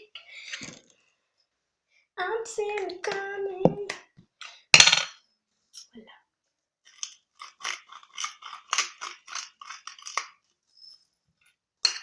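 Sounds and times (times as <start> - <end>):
fork beating eggs in bowl: 7.0 - 10.4.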